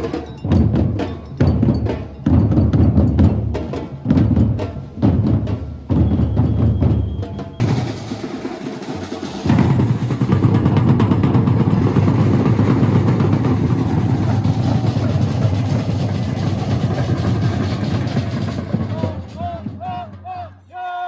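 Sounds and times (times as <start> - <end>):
drum ensemble groove: 0.0 - 21.0
deep bass drums: 9.5 - 20.5.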